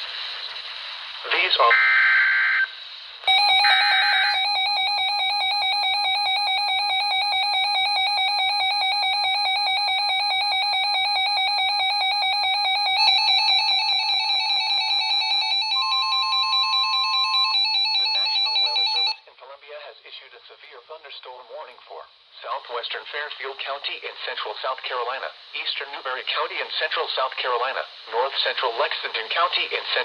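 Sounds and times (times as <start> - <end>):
faint steady alarm tone: 3.2 - 19.3
weather radio alarm beeping: 3.3 - 19.2.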